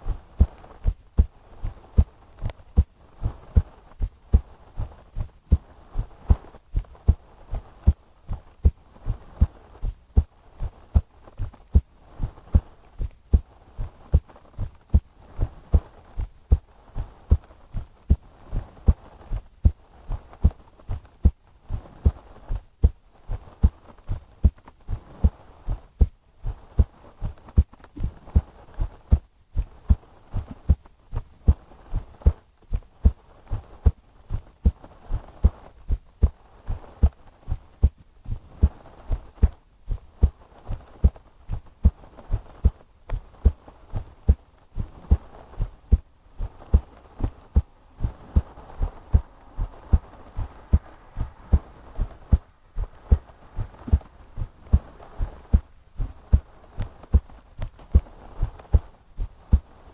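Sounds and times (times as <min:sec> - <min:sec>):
heartbeat thumps: 0:00.1 - 0:34.8, 0:35.4 - 0:59.8
faint hiss: 0:33.2 - 0:59.9.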